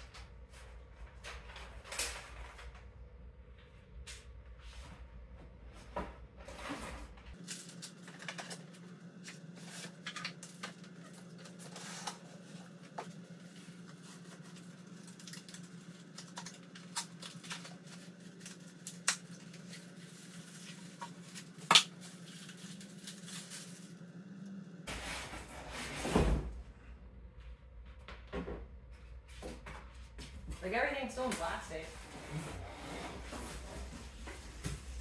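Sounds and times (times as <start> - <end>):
cardboard and plastic packaging rustling: 5.9 - 24.0.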